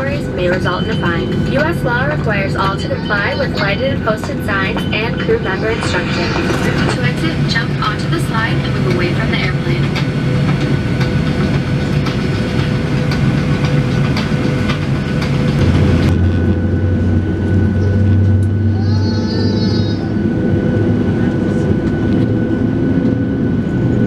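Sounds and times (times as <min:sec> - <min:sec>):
aircraft cabin whine and rumble: 0:00.0 - 0:24.0
deep hum: 0:04.5 - 0:09.0, 0:15.2 - 0:23.1.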